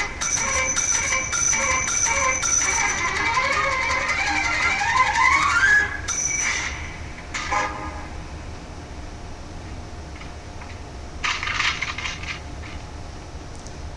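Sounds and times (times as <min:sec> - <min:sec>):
typewriter bell ding: 0:00.2 - 0:03.0.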